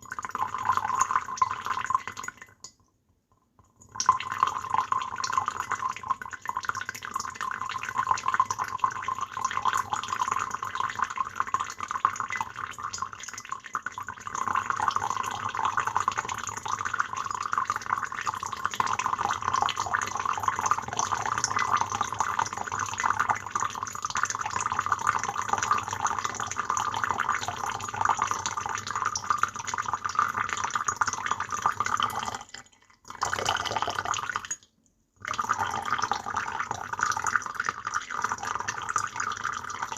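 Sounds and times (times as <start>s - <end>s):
water pouring into a teapot: 0.0s - 2.8s, 3.8s - 39.9s.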